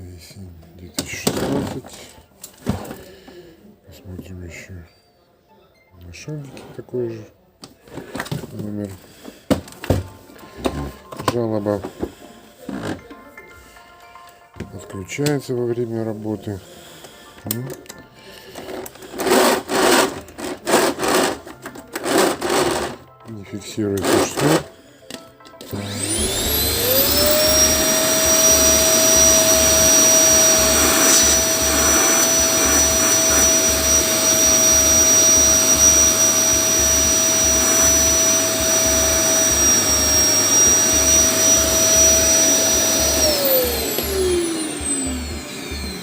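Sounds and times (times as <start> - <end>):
vacuum cleaner motor whistling: 25.7 - 46.0.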